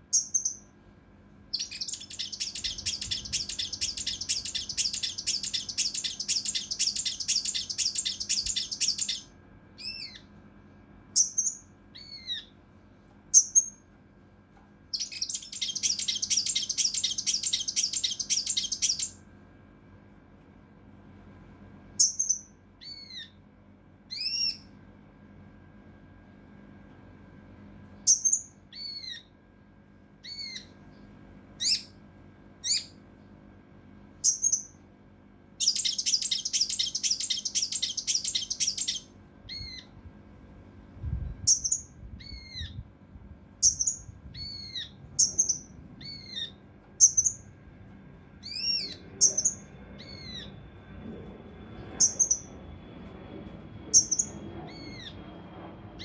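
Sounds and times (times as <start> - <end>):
rapid bird song burst: 0.1 - 0.6, 1.5 - 10.3, 11.2 - 12.5, 14.9 - 19.2, 22.0 - 23.3, 35.6 - 39.8, 41.5 - 42.8, 43.6 - 47.4, 48.4 - 50.5, 52.0 - 52.5, 54.0 - 55.2
bird whistled calls: 0.1 - 0.7, 1.6 - 10.3, 11.2 - 12.5, 13.4 - 13.8, 15.0 - 19.2, 22.0 - 23.3, 24.1 - 24.6, 28.1 - 29.2, 30.3 - 30.7, 31.6 - 31.9, 32.6 - 33.0, 34.2 - 34.7, 35.6 - 39.9, 41.5 - 42.8, 43.6 - 47.4, 48.4 - 50.5, 52.0 - 52.5, 54.0 - 55.2.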